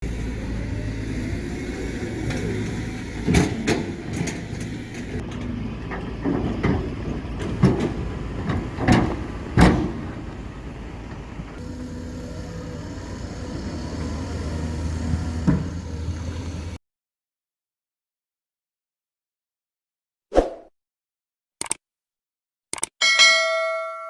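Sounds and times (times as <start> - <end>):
diesel engine hum: 0.0 - 16.8.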